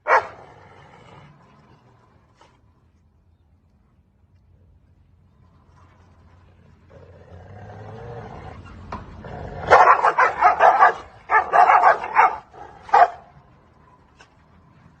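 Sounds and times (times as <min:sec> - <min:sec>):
dog barking: 0:00.0 - 0:00.4, 0:09.7 - 0:13.3
dog growling: 0:06.9 - 0:08.6.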